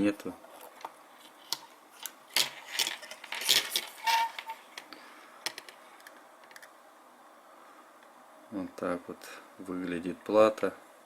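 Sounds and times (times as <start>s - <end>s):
rustling: 0.4s - 5.8s
small parts clicking and knocking: 0.5s - 6.8s.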